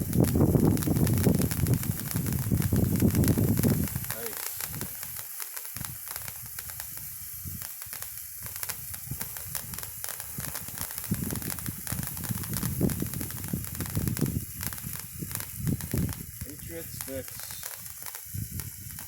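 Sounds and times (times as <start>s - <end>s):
sparkler crackling sizzle: 0.0s - 19.0s.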